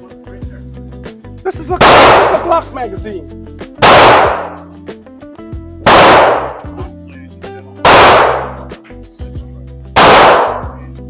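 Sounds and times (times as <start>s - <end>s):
background music: 0.0s - 11.0s
pistol shots: 1.8s - 2.5s, 3.8s - 4.7s, 5.9s - 6.7s, 7.8s - 8.7s, 10.0s - 10.8s.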